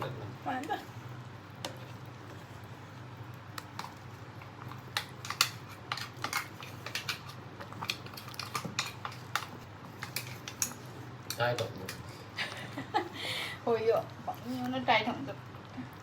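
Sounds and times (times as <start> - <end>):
utensils tapping cookware: 4.9 - 12.0.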